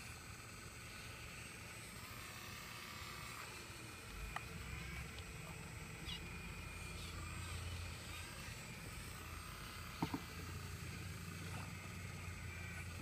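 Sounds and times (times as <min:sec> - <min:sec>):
excavator engine running: 0:00.0 - 0:13.0
sharp knocks: 0:10.0 - 0:10.3.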